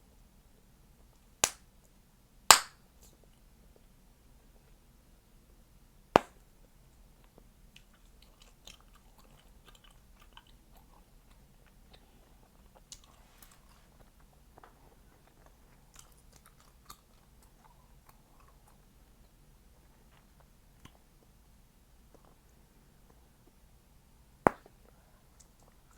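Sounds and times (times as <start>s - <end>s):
gum chewing: 7.8s - 13.2s.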